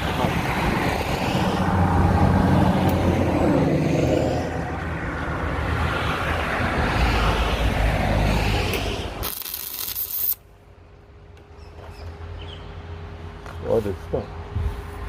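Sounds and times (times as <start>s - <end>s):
welding arc crackling and buzzing: 9.2s - 10.4s.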